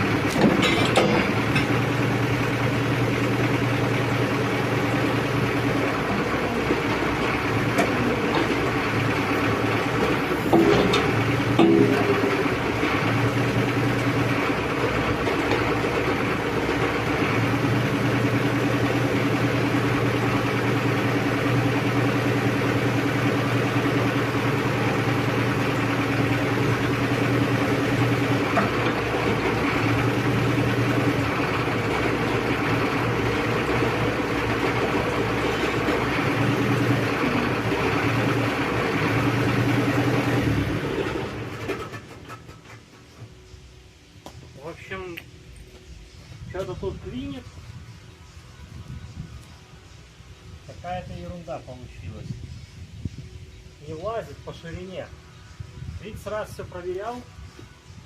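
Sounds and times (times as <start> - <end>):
hydraulic boom operating: 0.0 - 42.9
excavator diesel engine running: 0.0 - 47.5.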